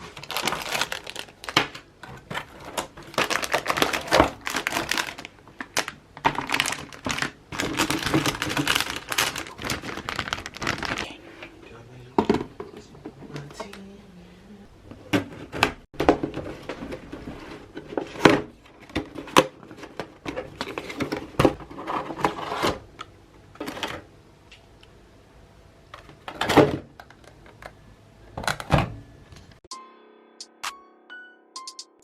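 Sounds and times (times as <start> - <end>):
hands handling computer parts: 0.0 - 11.1
packaging rustling: 0.0 - 11.1.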